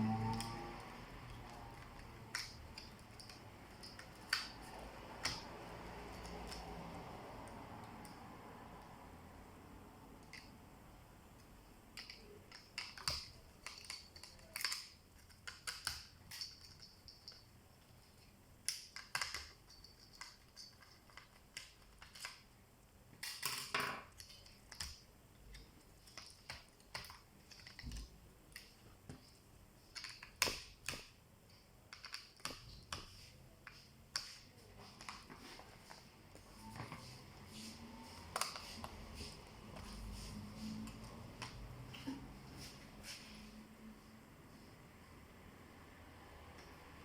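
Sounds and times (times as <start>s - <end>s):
laptop parts clicking and tapping: 0.1s - 9.0s, 10.2s - 10.6s, 11.3s - 36.0s.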